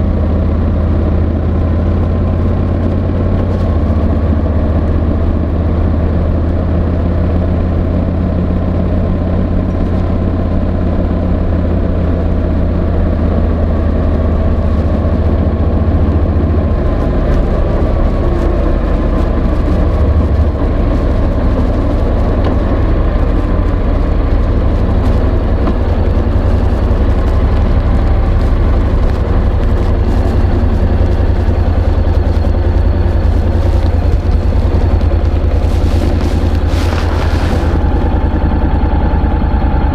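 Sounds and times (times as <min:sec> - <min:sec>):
motorcycle engine running: 0:00.0 - 0:39.9
microphone scraping jacket fabric: 0:14.4 - 0:38.4.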